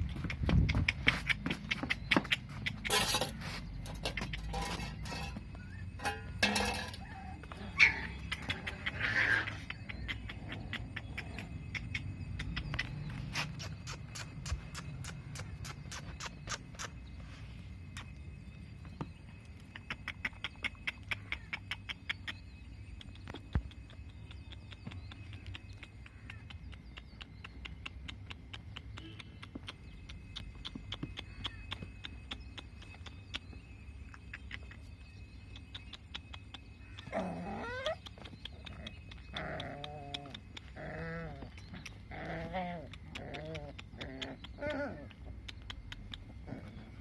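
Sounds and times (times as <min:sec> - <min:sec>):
puppy whining: 0:01.1 - 0:17.2, 0:37.0 - 0:47.0.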